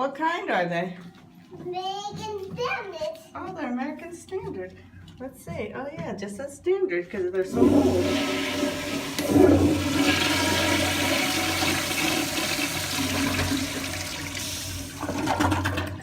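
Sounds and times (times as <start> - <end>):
toilet flushing: 7.5 - 16.0.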